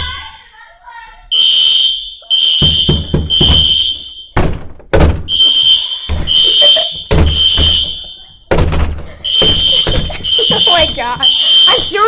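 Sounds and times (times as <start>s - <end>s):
fire alarm pulsing tone: 1.3s - 4.4s, 5.3s - 8.5s, 9.2s - 12.0s
heavy thumps: 2.5s - 12.0s.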